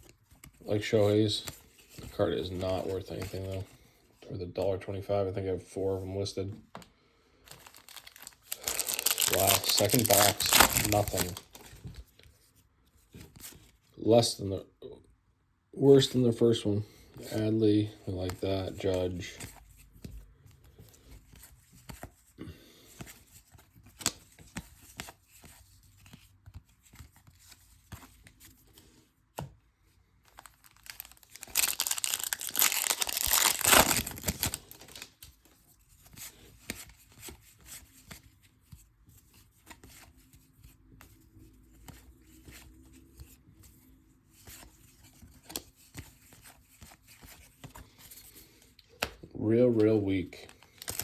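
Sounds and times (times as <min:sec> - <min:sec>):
wrapper tearing and crinkling: 0:07.5 - 0:11.8, 0:30.3 - 0:35.3, 0:50.6 - 0:51.0
cards shuffling and clicking: 0:07.5 - 0:12.4, 0:17.9 - 0:29.6, 0:30.2 - 0:43.8, 0:44.4 - 0:51.0.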